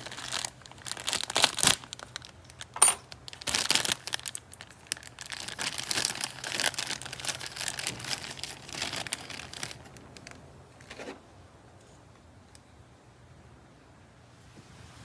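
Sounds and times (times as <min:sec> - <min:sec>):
wrapping material crinkling: 0:00.0 - 0:11.1.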